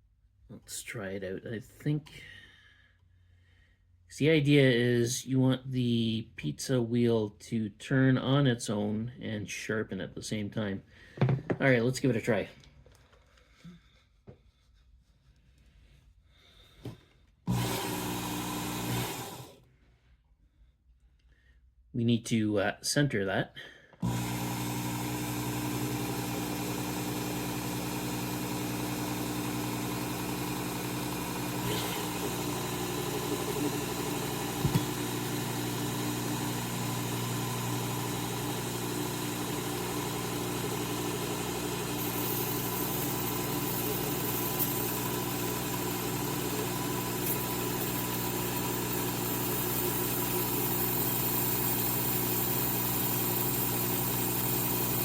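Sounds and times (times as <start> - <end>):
belt sharpener motor running: 17.5 - 19.6, 24.0 - 55.0.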